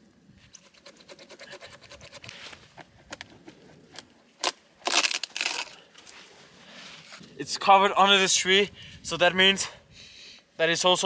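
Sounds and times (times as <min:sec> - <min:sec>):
small saw rasping through wood: 0:00.6 - 0:02.5.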